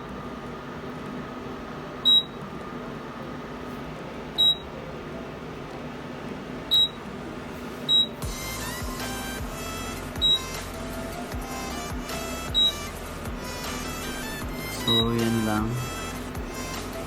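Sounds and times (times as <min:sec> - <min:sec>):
steady hum: 0:00.0 - 0:17.0
short high beeps: 0:02.1 - 0:02.4, 0:04.4 - 0:04.6, 0:06.7 - 0:07.0.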